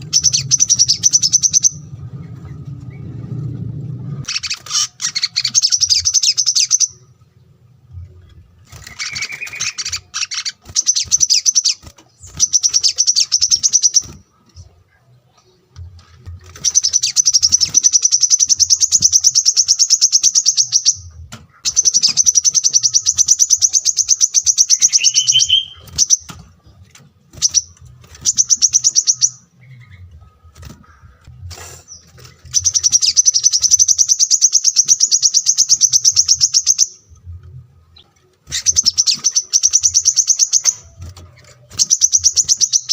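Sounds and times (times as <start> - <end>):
faint low hum: 0.0 - 11.2.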